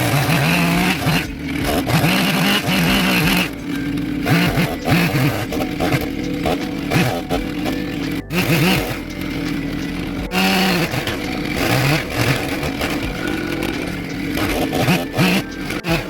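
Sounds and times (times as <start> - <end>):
chainsaw revving cutting wood: 0.0 - 9.0, 9.6 - 16.0.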